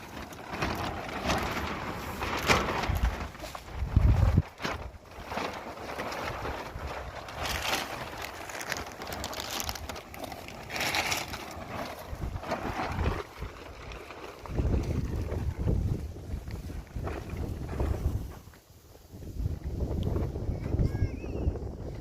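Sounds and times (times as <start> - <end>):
wind buffeting microphone: 0.0 - 5.5, 11.7 - 22.0.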